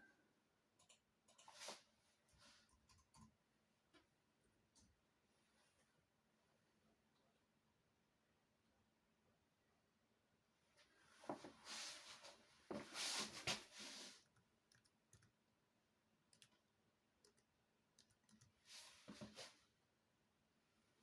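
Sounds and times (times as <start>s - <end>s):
laptop keyboard typing: 14.7s - 15.4s, 16.3s - 16.6s, 17.2s - 18.6s.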